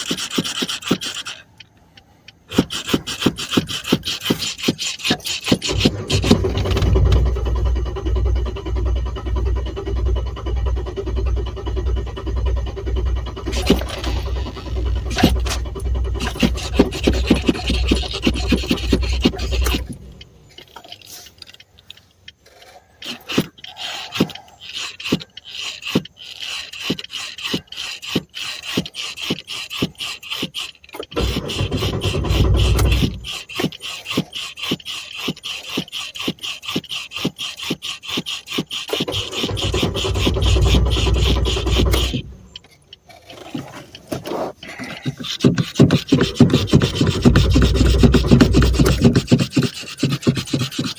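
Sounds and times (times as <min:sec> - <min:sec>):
car engine cranking on starter: 0:05.1 - 0:27.4, 0:30.0 - 0:33.9, 0:38.7 - 0:43.1, 0:45.3 - 0:49.6.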